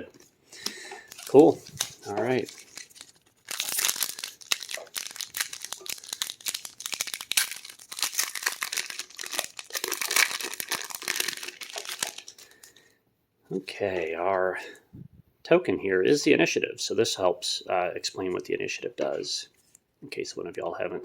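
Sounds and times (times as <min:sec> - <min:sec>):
foil wrapper crinkling and tearing: 0:00.6 - 0:12.8.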